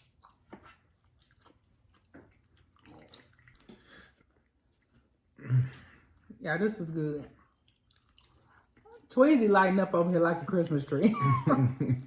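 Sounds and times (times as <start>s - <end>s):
quiet chewing: 0.0s - 9.1s.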